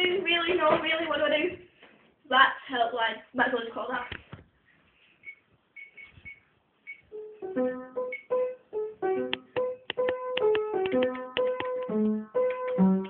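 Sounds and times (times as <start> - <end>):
short electronic beeps: 5.2 - 7.0
keyboard melody: 7.1 - 13.0.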